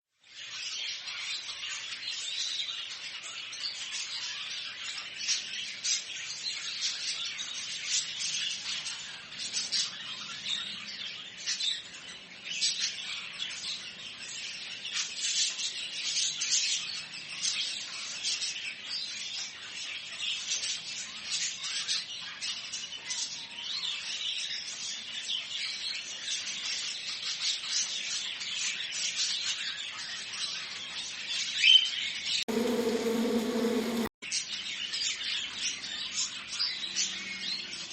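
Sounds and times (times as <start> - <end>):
cage birds chirping: 0.2 - 37.9.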